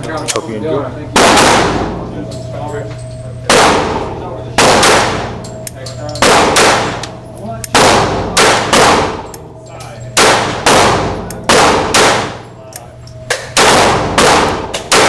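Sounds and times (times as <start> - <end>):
pistol shots echoing: 1.1 - 2.1, 3.4 - 12.6, 13.3 - 15.0.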